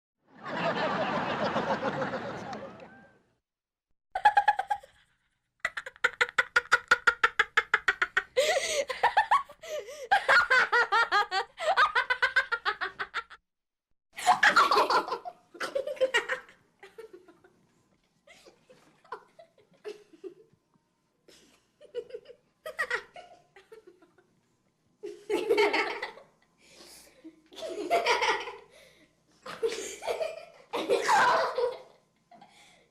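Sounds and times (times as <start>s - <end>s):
person laughing: 5.6s - 13.4s.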